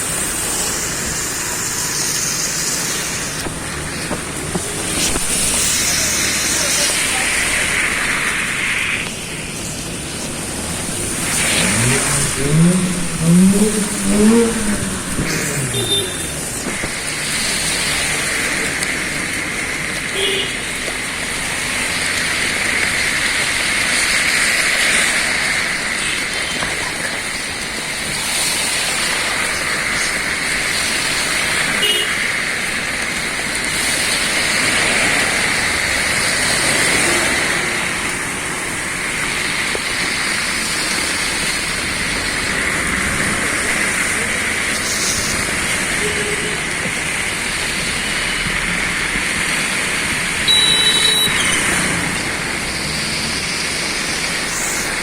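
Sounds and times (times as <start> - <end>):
rain: 0.0 - 55.0
traffic on a wet road: 0.0 - 55.0.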